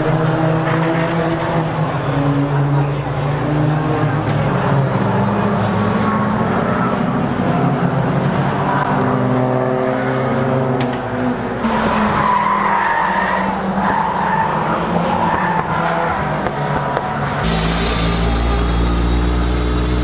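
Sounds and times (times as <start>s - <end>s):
car engines revving: 0.0s - 20.0s
tyres skidding: 0.1s - 20.0s.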